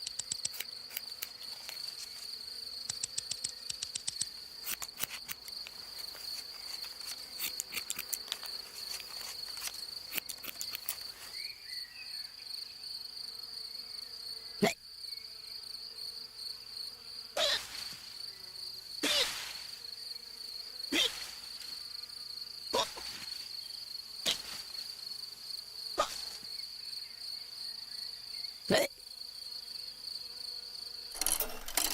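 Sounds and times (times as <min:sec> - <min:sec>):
rapid small clicks: 0:00.0 - 0:01.8, 0:02.8 - 0:11.1
cricket trill: 0:00.0 - 0:12.3, 0:16.8 - 0:31.9
sharp hiccups: 0:26.0 - 0:26.3, 0:28.7 - 0:29.0.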